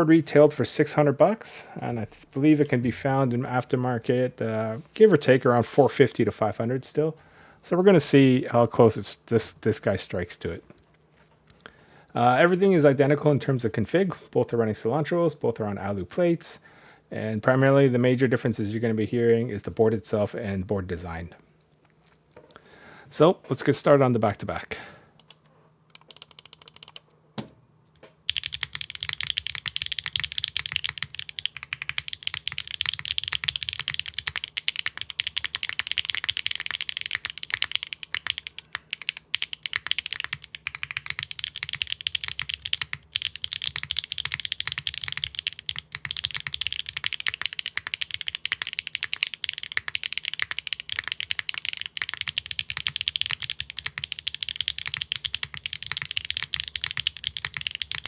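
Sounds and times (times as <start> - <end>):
mechanical keyboard typing: 25.2 - 27.0, 28.3 - 58.0.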